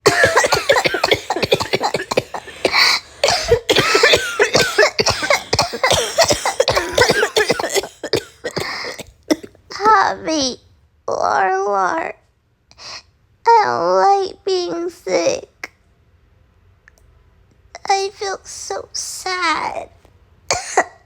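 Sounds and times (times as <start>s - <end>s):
people coughing hard: 0.0s - 9.6s, 20.5s - 20.9s.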